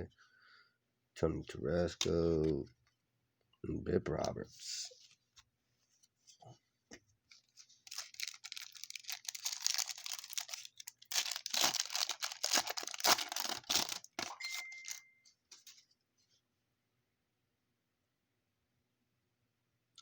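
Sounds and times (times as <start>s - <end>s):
wrapper tearing and crinkling: 7.5s - 15.0s.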